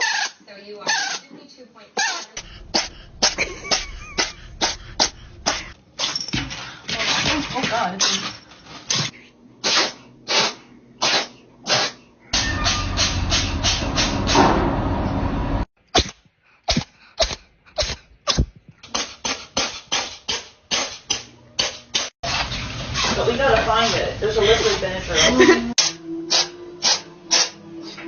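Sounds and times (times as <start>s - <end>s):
loud steady noise: 2.4s - 5.8s
short sneezes: 9.6s - 12.0s.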